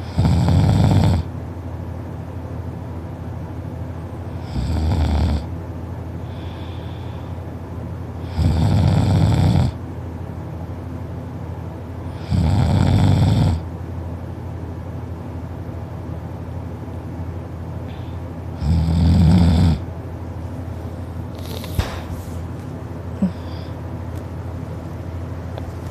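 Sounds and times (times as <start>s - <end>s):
man snoring loudly: 0.0s - 1.3s, 4.4s - 5.5s, 8.3s - 9.8s, 12.2s - 13.6s, 18.6s - 19.8s
steady low hum: 0.0s - 25.9s.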